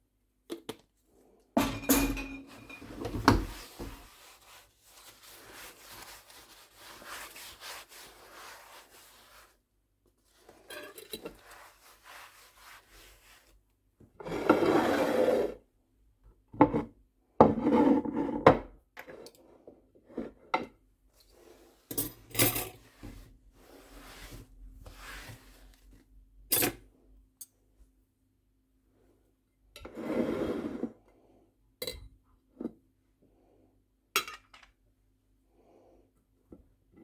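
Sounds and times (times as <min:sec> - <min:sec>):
dishes and utensils clattering: 0:01.6 - 0:04.0
scraping and rubbing: 0:02.5 - 0:09.5.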